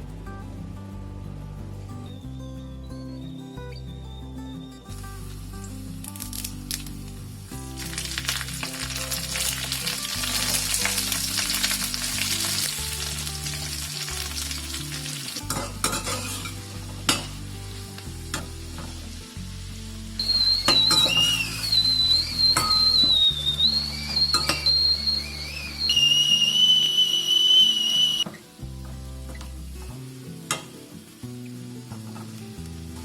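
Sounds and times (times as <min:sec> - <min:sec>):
high wavering whistling tone: 0:02.1 - 0:05.2, 0:20.2 - 0:28.3
food sizzling in hot oil: 0:05.0 - 0:33.0.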